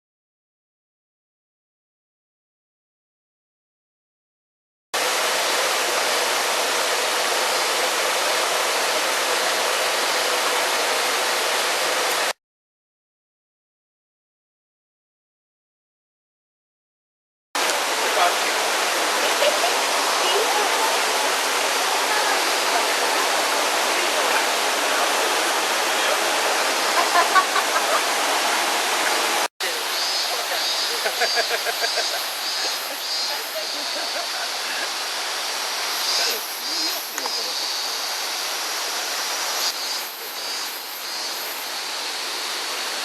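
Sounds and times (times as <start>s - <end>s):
waterfall rushing: 5.0s - 12.3s, 17.6s - 43.0s.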